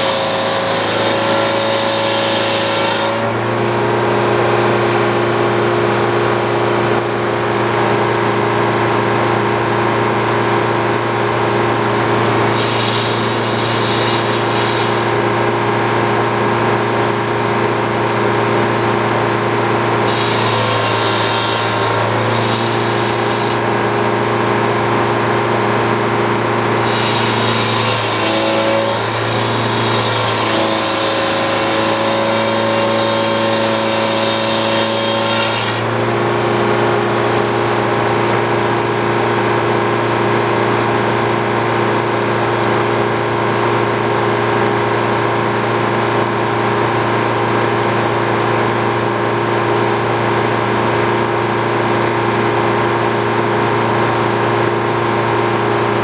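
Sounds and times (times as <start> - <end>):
saw blade cutting log: 0.0 - 3.6, 11.6 - 17.5, 18.3 - 36.8
sawmill engine drone: 0.0 - 56.0.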